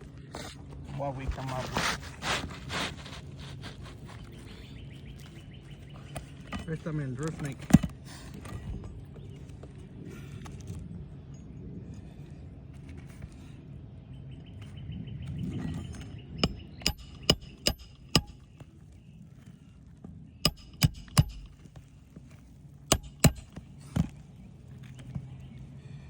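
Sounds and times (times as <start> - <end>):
low steady hum: 3.1 - 26.0
hammer striking nails: 16.4 - 18.5, 20.5 - 21.7, 22.9 - 23.6.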